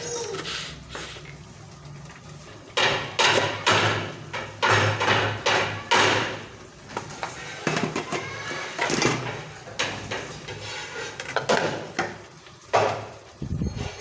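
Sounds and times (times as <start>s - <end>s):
sharp kitchen knocks: 2.8s - 6.5s, 11.5s - 13.1s.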